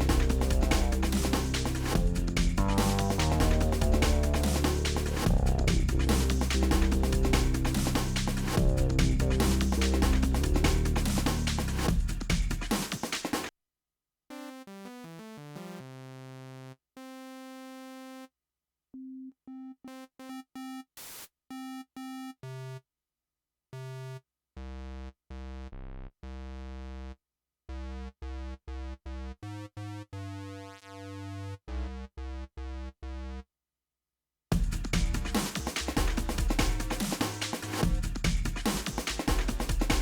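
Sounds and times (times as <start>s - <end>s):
synthesizer notes: 0.0s - 11.0s.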